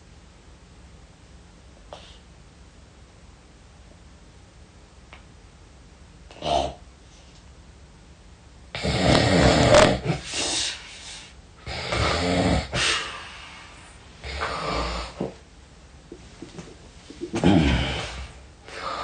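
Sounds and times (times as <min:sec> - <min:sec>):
person snoring heavily: 0:08.7 - 0:10.6, 0:11.6 - 0:13.5, 0:14.2 - 0:15.4, 0:17.2 - 0:19.0.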